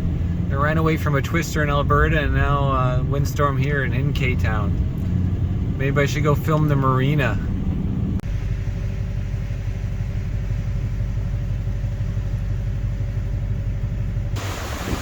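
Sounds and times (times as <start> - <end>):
road noise: 0.0 - 15.0
vehicle engine rumble: 0.0 - 15.0
wind buffeting microphone: 14.4 - 15.0.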